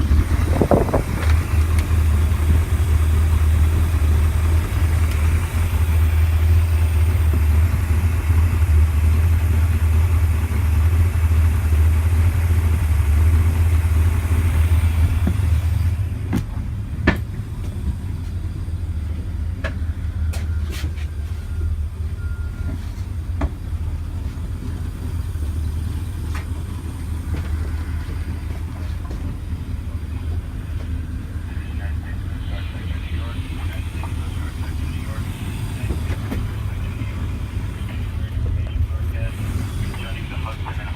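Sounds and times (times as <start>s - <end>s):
loud rushing noise: 0.0s - 1.6s
engine drone: 0.0s - 40.9s.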